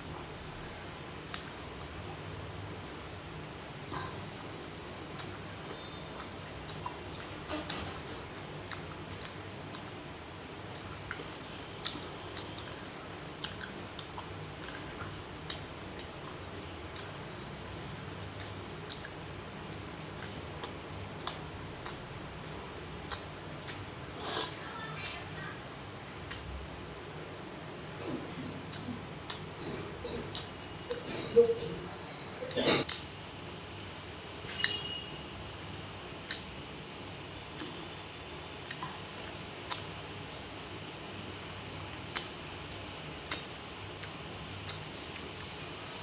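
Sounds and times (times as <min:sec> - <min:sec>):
wet chewing mouth clicks: 0:00.6 - 0:03.0, 0:04.0 - 0:10.0, 0:10.7 - 0:22.2, 0:23.1 - 0:24.6, 0:38.6 - 0:40.0, 0:42.1 - 0:45.3.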